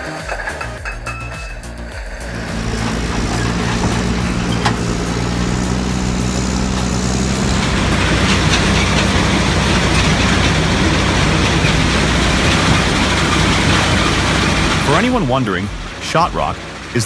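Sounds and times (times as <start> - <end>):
diesel engine drone: 2.1 - 15.2
machinery grinding and rattling: 2.2 - 15.1.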